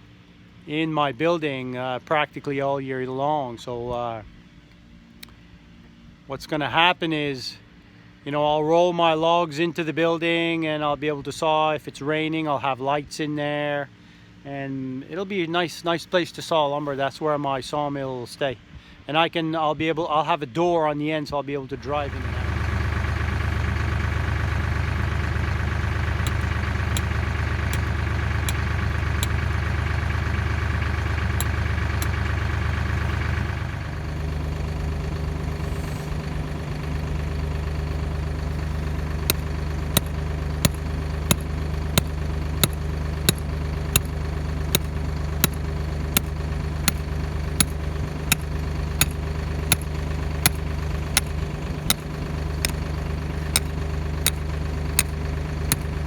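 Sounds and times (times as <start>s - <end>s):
engine idling: 21.9s - 56.0s.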